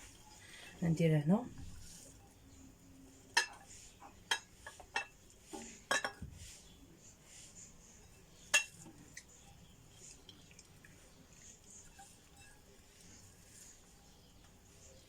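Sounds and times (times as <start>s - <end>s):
utensils and dishes clinking: 3.3s - 6.2s, 8.0s - 9.6s, 11.8s - 12.8s.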